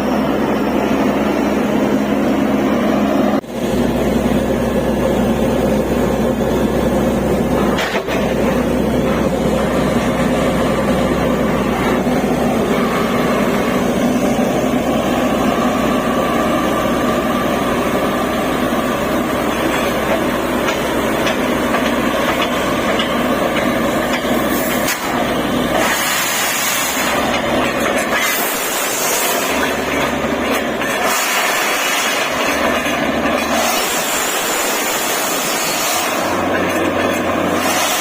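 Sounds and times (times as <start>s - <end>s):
drilling rig engine droning: 0.0s - 38.0s
loud hiss: 24.3s - 27.3s, 31.0s - 32.5s, 33.6s - 36.5s.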